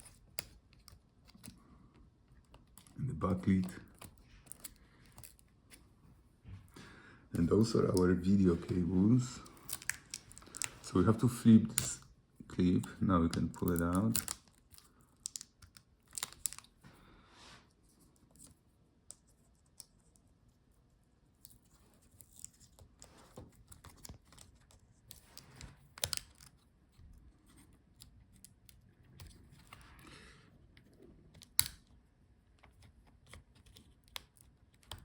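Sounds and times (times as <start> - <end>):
hands working inside laptop: 22.3 - 35.0.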